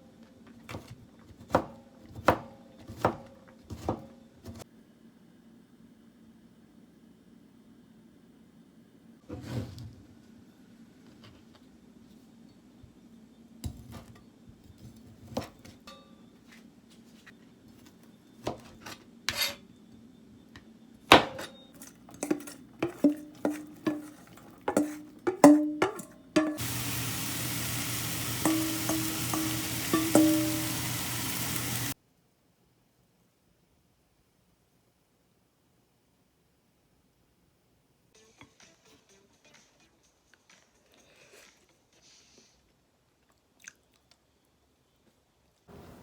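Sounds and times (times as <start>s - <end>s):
metal utensils clinking on dishes: 21.8s - 31.9s
food sizzling in a hot pan: 26.6s - 32.0s.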